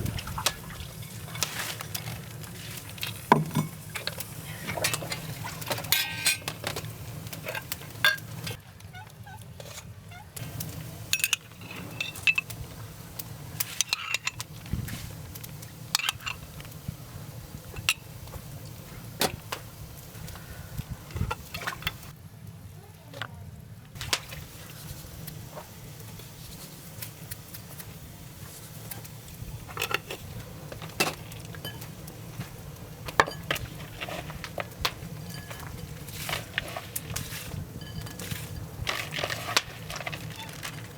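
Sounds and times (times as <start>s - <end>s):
utensils and dishes clinking: 3.0s - 8.6s, 11.1s - 12.6s, 13.7s - 14.5s, 15.9s - 16.4s, 30.8s - 32.0s, 33.1s - 40.9s.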